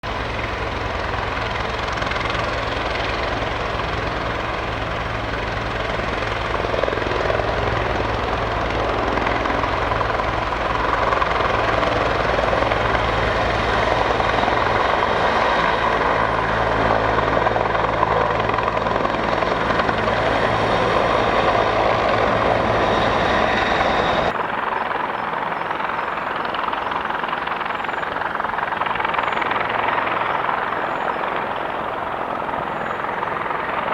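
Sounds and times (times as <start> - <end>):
helicopter engine whine: 0.0 - 33.9
helicopter rotor chop: 0.1 - 33.9.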